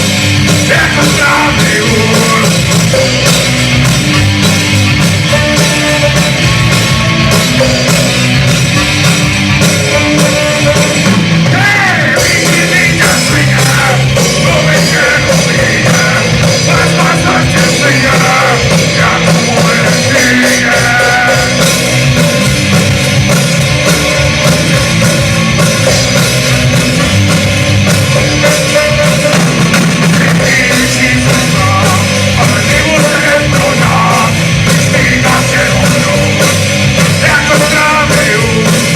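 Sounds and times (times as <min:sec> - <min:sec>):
rock band playing: 0:00.0 - 0:38.9
person singing: 0:00.5 - 0:03.1, 0:09.8 - 0:21.9, 0:28.1 - 0:38.9.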